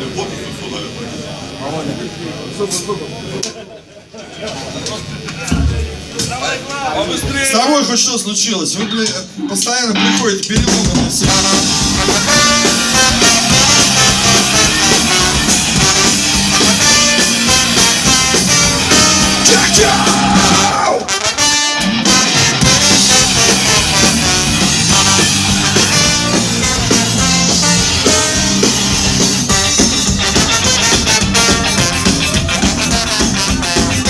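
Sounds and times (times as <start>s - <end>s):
live rock band playing ska-punk: 10.0s - 34.0s.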